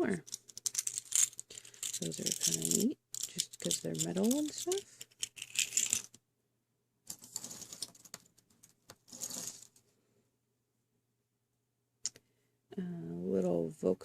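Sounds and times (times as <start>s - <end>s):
small charms clicking together: 0.2s - 6.1s.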